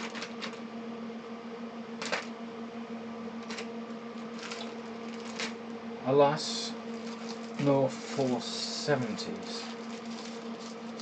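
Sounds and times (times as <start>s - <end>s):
clicks and rustles of small parts: 0.0s - 0.6s, 4.4s - 5.6s, 9.4s - 11.0s
steady background hum: 0.0s - 11.0s.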